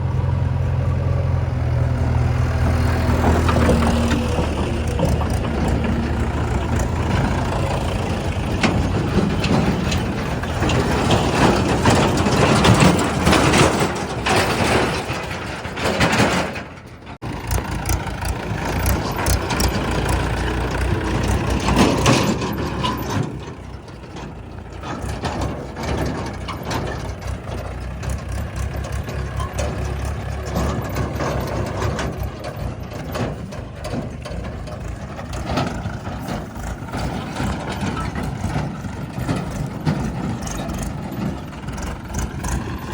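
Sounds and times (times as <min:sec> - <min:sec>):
diesel engines running: 0:00.0 - 0:42.9
knocks and clatter: 0:02.0 - 0:42.9.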